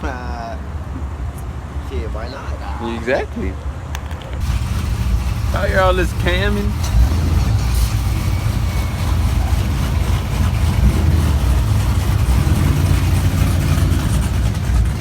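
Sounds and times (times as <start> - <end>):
car engine idling: 4.4 - 15.0.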